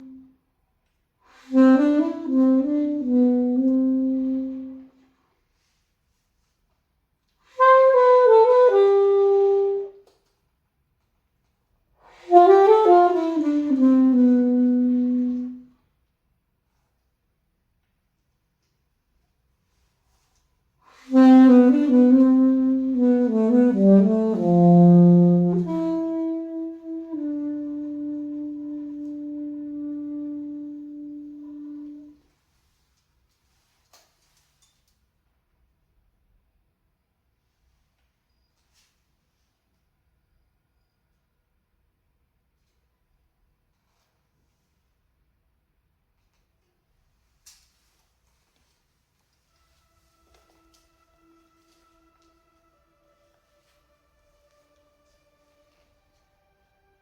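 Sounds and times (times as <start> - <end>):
alto saxophone playing held notes: 0.0 - 0.4, 1.3 - 5.2, 7.5 - 10.1, 12.0 - 15.8, 20.8 - 32.3, 49.4 - 57.0.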